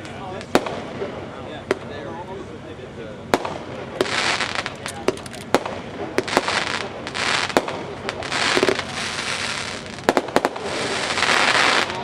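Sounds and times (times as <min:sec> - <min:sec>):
fireworks bangs: 0:00.0 - 0:01.9, 0:03.2 - 0:12.0
fireworks hissing: 0:03.3 - 0:12.0.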